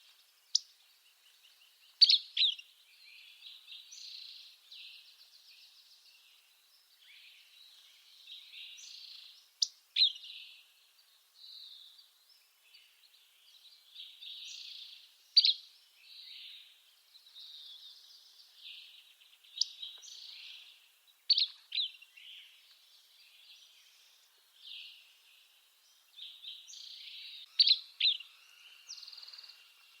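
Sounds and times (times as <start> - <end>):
faint bird twittering: 0.0 - 30.0.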